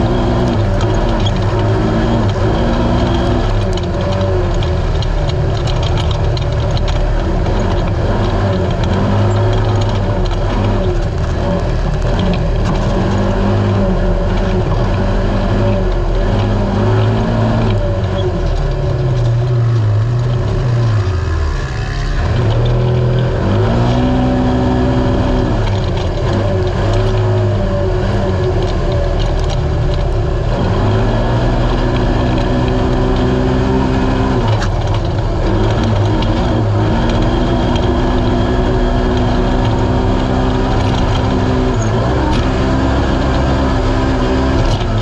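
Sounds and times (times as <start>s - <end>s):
race engine revving: 0.0s - 45.0s.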